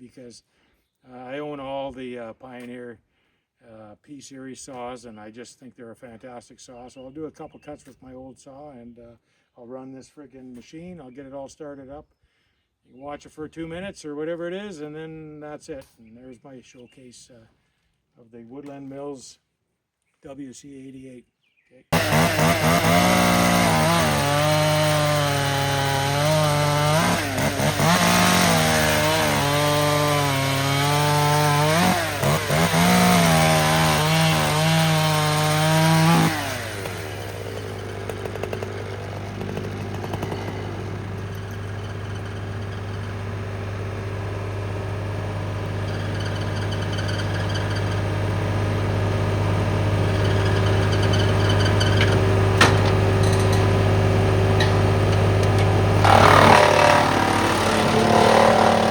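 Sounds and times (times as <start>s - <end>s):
chainsaw cutting wood: 22.0s - 58.9s
tractor engine running: 22.0s - 58.9s.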